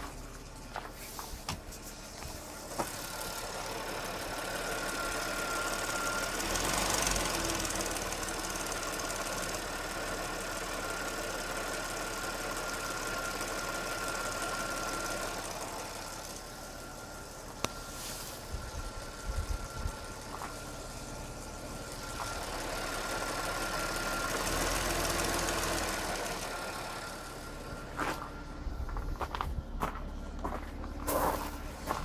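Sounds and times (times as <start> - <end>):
car engine running: 0.0 - 32.0.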